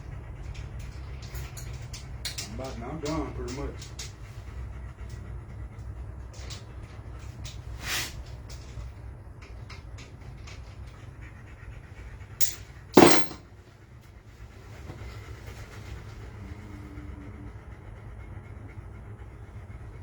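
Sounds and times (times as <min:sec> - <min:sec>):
metal engine parts clinking: 0:12.4 - 0:13.4.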